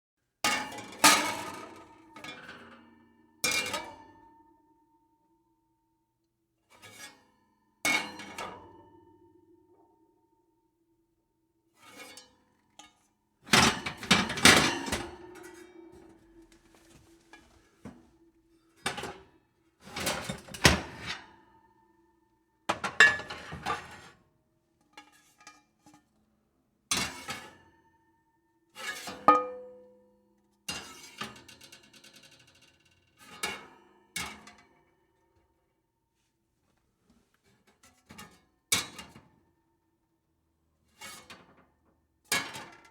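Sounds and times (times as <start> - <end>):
metal oven pans clattering: 13.6 - 18.1, 22.7 - 23.9.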